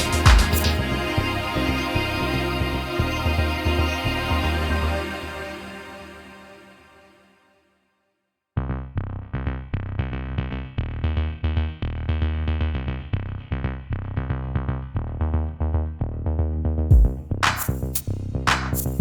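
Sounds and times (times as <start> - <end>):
drum-machine beat: 0.0 - 0.8, 16.9 - 19.0
synthesizer notes: 0.0 - 7.1.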